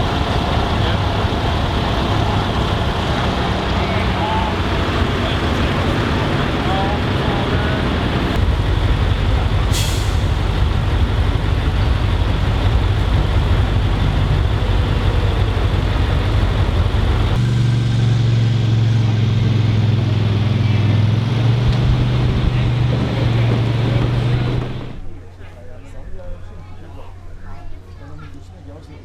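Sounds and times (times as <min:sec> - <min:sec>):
truck engines droning: 0:00.0 - 0:25.0
air brake hiss: 0:09.6 - 0:10.5.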